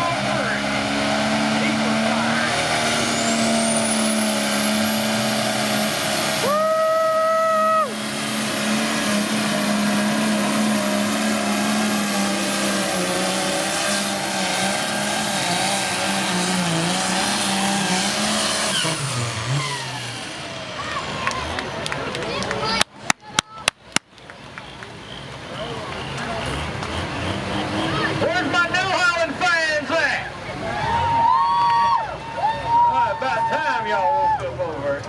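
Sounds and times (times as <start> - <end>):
high turbo whine: 0.0 - 21.8
diesel engine running hard: 0.0 - 22.8, 24.9 - 31.2.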